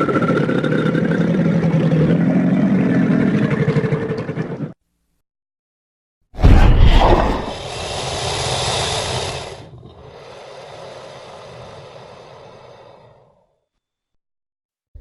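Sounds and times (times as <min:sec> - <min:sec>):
monster roar hissing rasp: 0:06.4 - 0:13.4.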